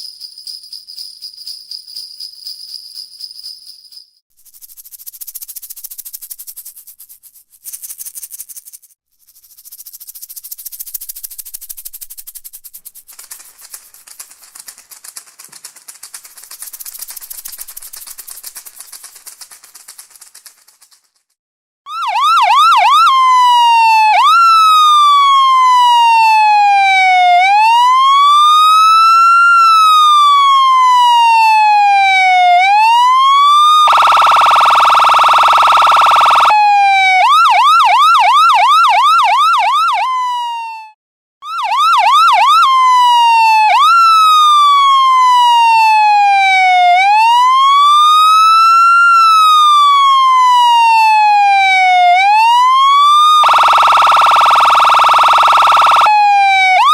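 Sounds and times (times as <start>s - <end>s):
siren wailing and yelping: 21.9s - 56.9s
buzzing siren horn: 31.7s - 37.2s, 50.0s - 56.9s.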